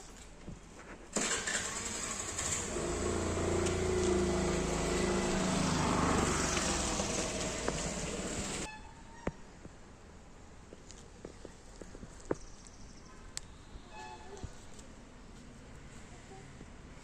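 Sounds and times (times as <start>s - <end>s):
engine hum passing: 1.2s - 8.7s.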